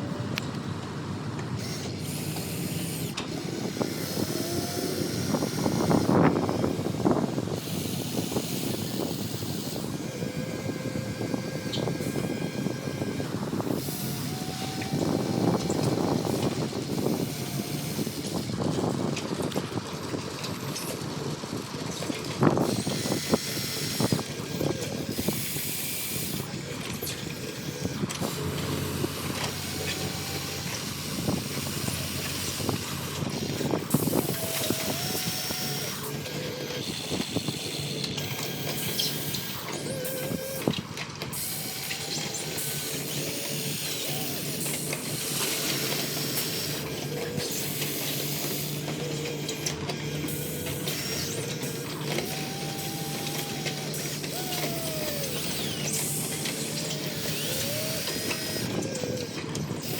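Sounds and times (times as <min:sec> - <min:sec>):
electric motor whines: 0:01.5 - 0:59.9.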